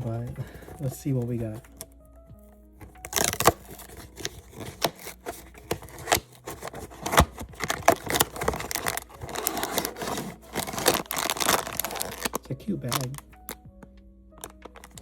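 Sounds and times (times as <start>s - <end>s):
packaging being opened by hand: 2.8s - 13.6s, 14.3s - 15.0s.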